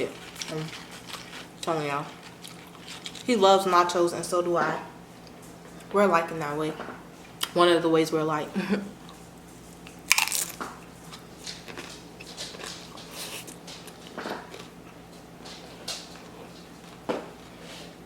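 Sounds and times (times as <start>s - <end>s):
chewing crunchy chips: 0.0s - 3.4s, 9.0s - 18.0s.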